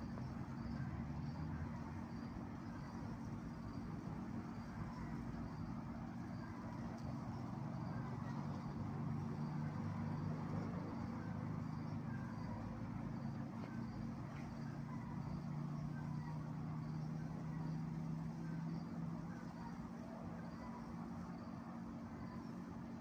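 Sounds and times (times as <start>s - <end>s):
low mechanical hum: 0.0s - 23.0s.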